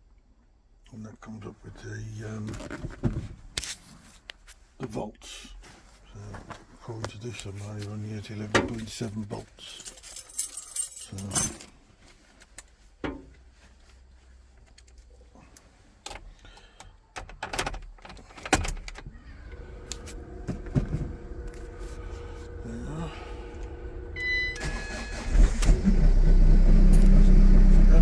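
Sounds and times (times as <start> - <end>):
van engine running: 18.9 - 28.0
short electronic beep: 24.2 - 25.1.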